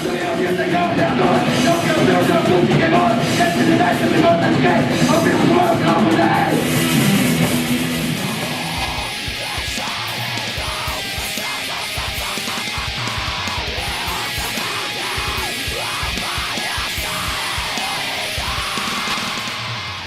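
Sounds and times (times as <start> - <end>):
hardcore music with electric guitars: 0.0 - 20.0.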